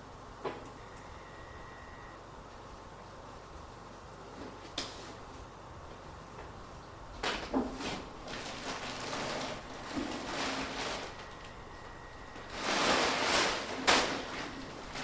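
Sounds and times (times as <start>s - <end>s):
packaging scraping and rustling: 7.2s - 11.6s, 12.4s - 15.0s.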